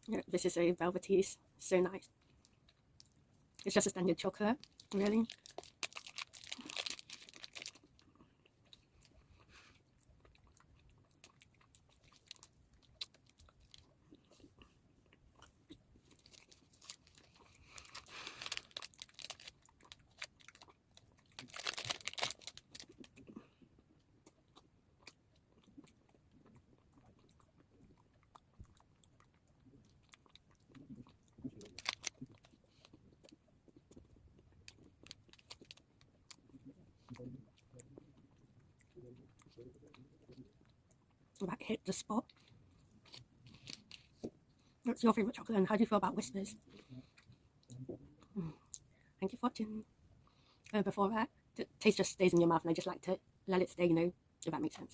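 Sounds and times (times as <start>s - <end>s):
soft chewing: 2.1s - 3.8s, 4.6s - 41.4s, 42.1s - 44.9s, 46.5s - 49.2s.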